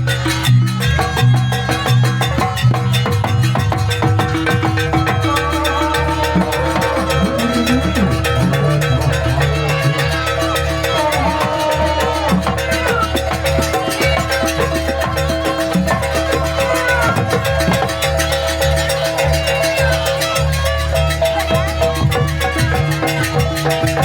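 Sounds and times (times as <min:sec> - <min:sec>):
live percussion ensemble music: 0:00.0 - 0:24.0.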